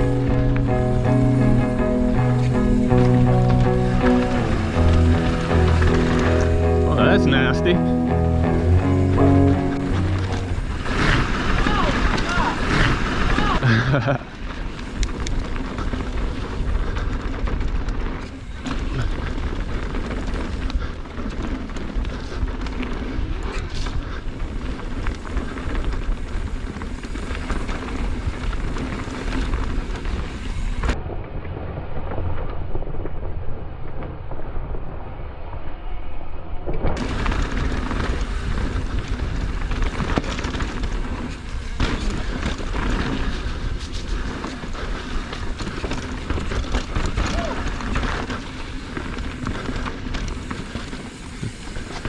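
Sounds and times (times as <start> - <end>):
bike knocking over ground: 37.0 - 52.0.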